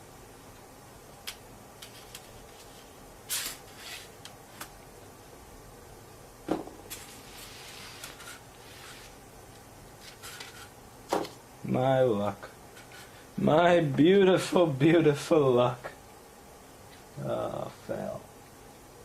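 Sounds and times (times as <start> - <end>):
scraping rustle: 6.9 - 9.2, 10.0 - 10.8.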